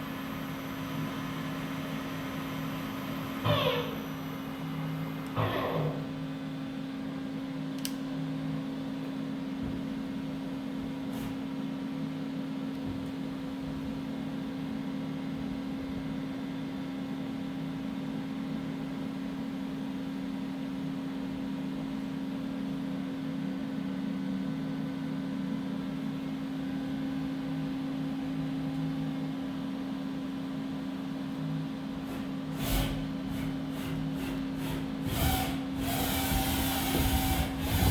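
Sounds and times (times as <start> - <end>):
lathe machine hum with tone: 0.0 - 7.0.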